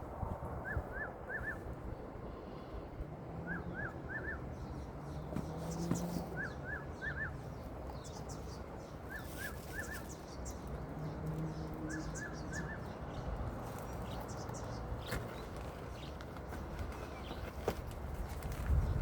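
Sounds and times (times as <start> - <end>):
bird chirping: 3.4 - 17.6.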